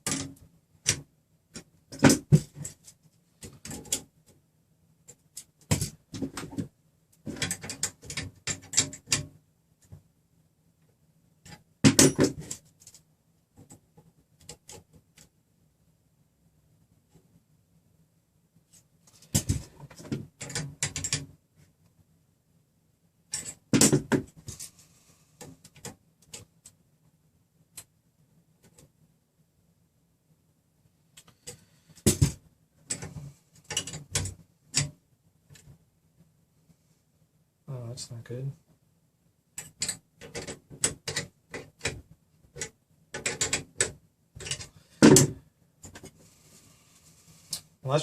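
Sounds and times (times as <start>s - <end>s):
small hard parts clicking: 31.2s - 35.7s, 39.6s - 46.2s.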